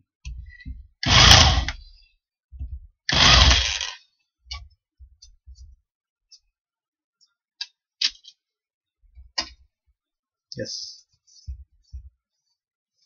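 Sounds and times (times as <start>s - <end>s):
electric drill cutting into wood: 1.0s - 1.8s, 3.1s - 4.0s.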